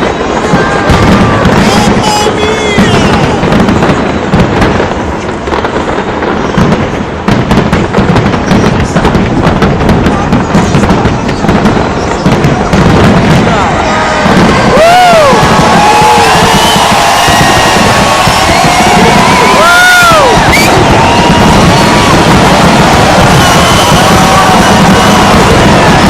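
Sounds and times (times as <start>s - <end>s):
fireworks booming and crackling: 0.0s - 26.0s
fireworks sharp bangs: 0.0s - 26.0s
crowd cheering and whooping: 0.1s - 3.9s, 13.2s - 26.0s.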